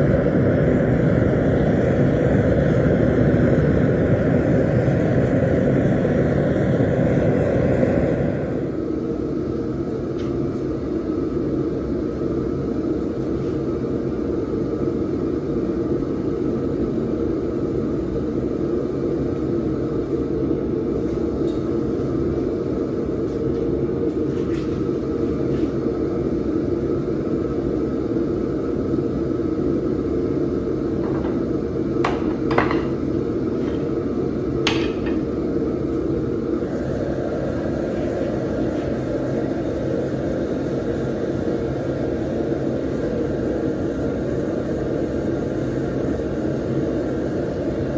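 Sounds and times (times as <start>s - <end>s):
forge roaring: 0.0s - 8.9s.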